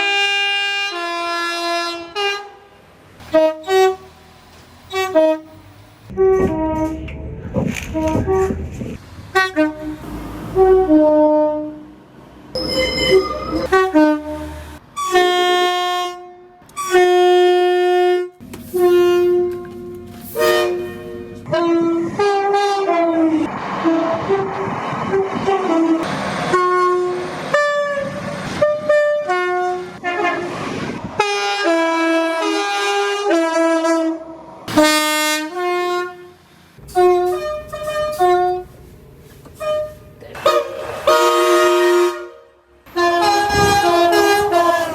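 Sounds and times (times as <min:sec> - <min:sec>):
train horn blasts: 0:00.0 - 0:04.2, 0:04.8 - 0:07.2, 0:07.9 - 0:08.6, 0:09.3 - 0:11.9, 0:12.6 - 0:38.8, 0:39.6 - 0:44.9
moving train rushing: 0:18.4 - 0:44.9.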